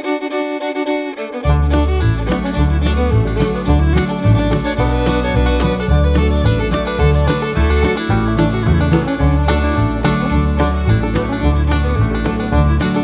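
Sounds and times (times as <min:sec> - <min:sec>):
instrumental music with bass and beat: 0:01.4 - 0:13.0.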